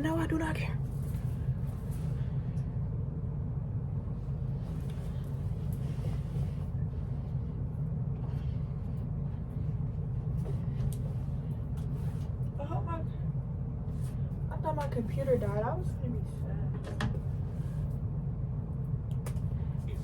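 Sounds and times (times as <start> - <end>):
low rumble: 0.0 - 20.0.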